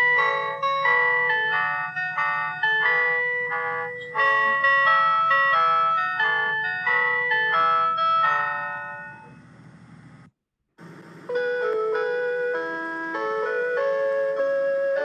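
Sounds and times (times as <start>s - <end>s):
faint low hum: 8.7s - 12.2s.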